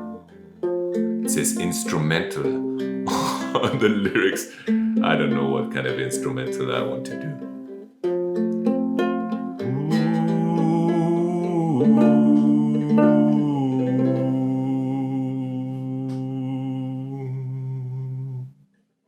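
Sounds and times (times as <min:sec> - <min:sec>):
strummed guitalele chords: 0:00.0 - 0:16.8
person humming long notes: 0:03.1 - 0:03.9, 0:09.6 - 0:18.6.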